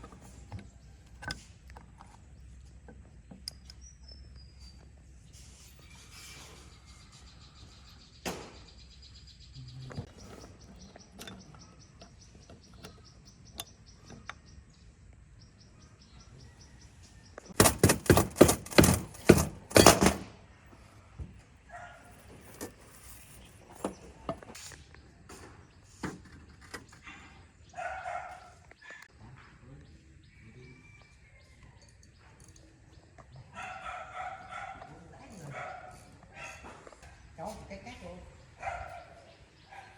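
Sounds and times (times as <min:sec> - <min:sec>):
sharp ringing knocks: 0:17.6 - 0:20.3.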